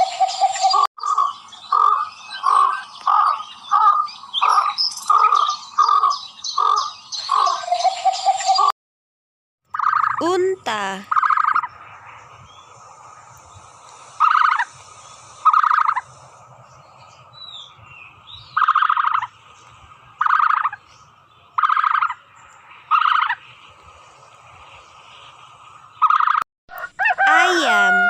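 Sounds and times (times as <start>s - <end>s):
turkey gobbling: 26.0s - 28.0s.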